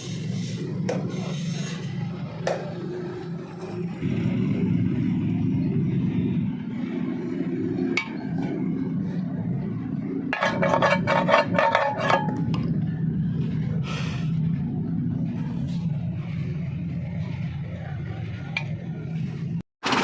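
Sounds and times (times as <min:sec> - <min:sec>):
steady low rumble: 0:03.0 - 0:19.6.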